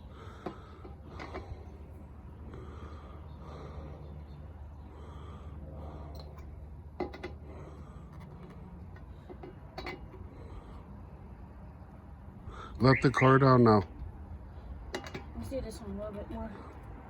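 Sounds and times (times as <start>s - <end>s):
hard effortful breathing: 0.0s - 12.8s
steady low hum: 0.0s - 17.0s.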